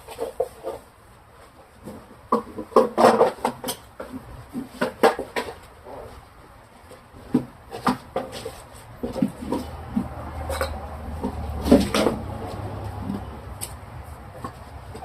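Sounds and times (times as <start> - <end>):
refrigerator parts knocking and clicking: 1.9 - 6.0, 7.2 - 15.0.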